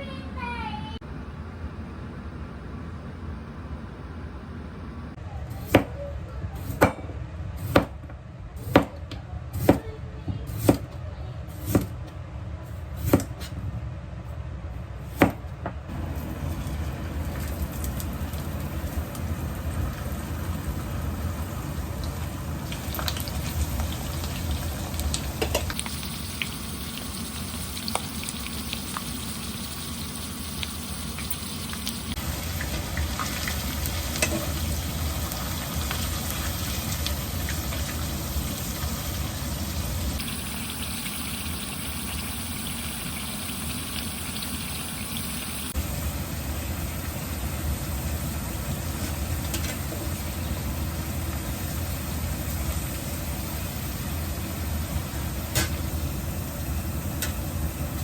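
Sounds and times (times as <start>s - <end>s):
food sizzling in a pan: 16.0s - 56.2s.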